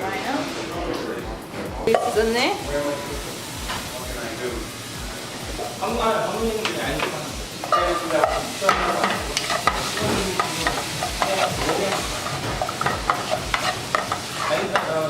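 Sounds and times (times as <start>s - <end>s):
onion and garlic sizzling: 0.0s - 15.0s
utensil scraping and knocking pan: 6.6s - 15.0s.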